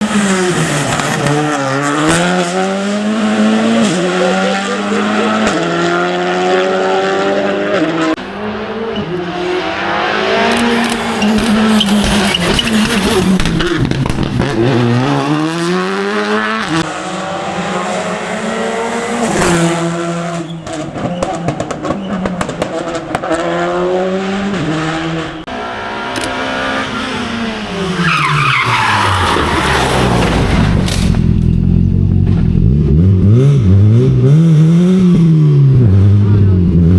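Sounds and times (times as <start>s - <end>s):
rally car engine at full throttle: 0.0s - 36.9s
tyre squeal: 10.8s - 13.3s.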